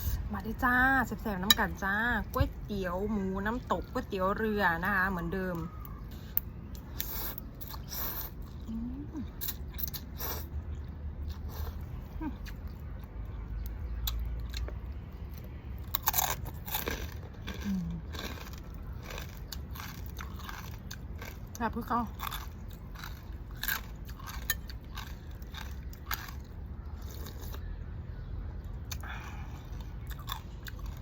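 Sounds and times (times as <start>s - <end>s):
person crunching and chewing food: 1.1s - 13.2s, 14.0s - 27.8s, 28.6s - 31.0s.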